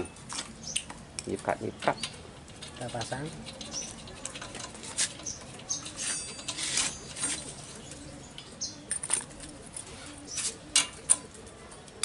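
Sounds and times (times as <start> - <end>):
scrapes and clicks of hand work: 1.9 - 7.6
bird cooing: 2.0 - 12.0.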